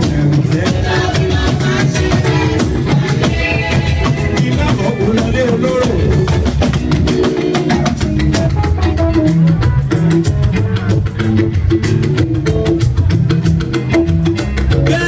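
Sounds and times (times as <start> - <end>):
upbeat drum-driven music: 0.0 - 15.0.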